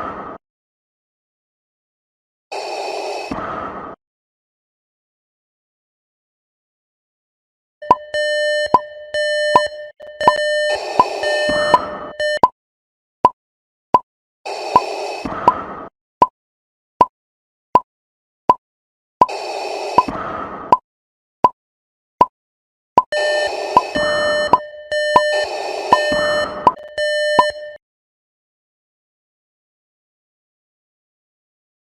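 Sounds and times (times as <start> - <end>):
electronic alarm beeping: 7.8 - 12.5, 23.0 - 27.8.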